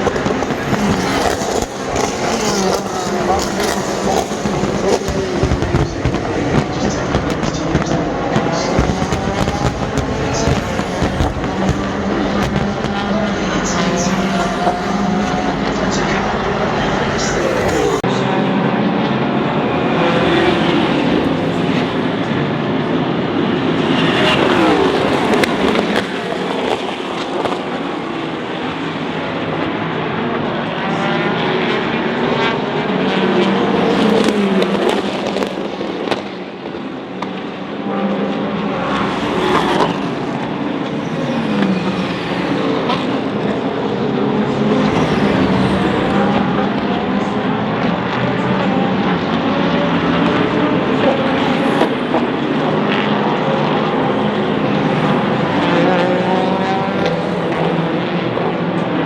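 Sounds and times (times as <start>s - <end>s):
cars on track: 0.0s - 59.0s
race cars passing at speed: 0.0s - 59.0s.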